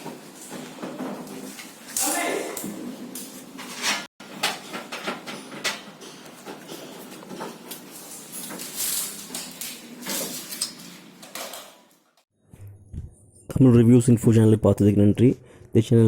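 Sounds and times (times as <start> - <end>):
objects clattering while handled: 0.0 - 12.2.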